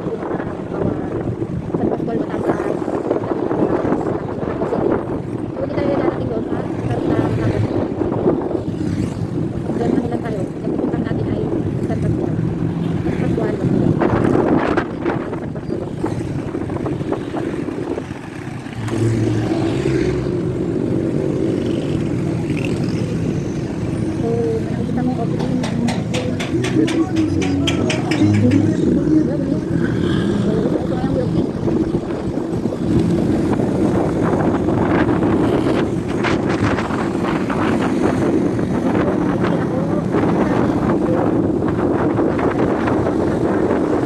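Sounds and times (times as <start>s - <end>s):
wind buffeting microphone: 0.0s - 44.0s
vehicle engine droning: 6.0s - 41.3s
vehicle engine running: 20.1s - 34.1s
short rattles: 25.1s - 29.2s.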